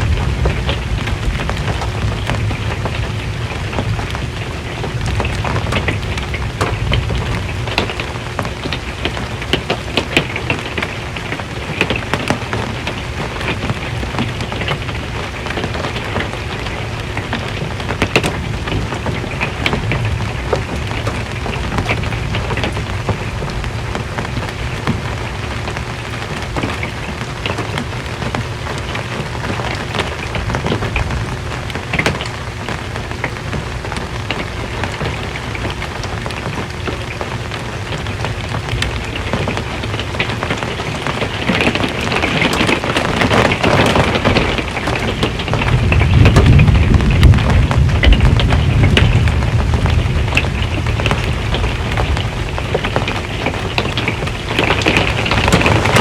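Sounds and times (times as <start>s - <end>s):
rain on a metal roof: 0.0s - 56.0s
low rumble: 45.4s - 56.0s.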